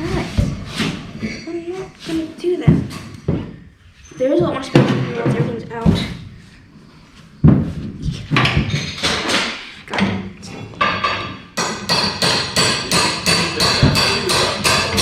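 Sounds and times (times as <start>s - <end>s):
loud knocks: 4.4s - 6.3s, 7.4s - 15.0s
sharp metal strikes: 11.6s - 15.0s.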